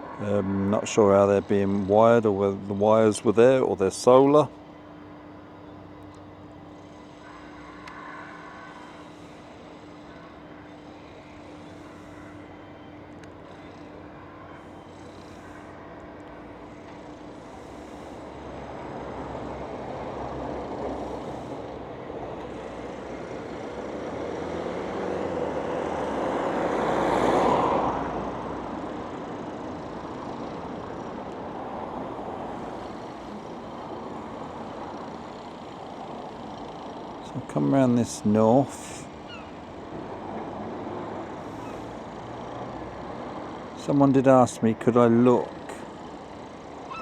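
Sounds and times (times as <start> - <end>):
road vehicle passing by: 17.5 - 47.0.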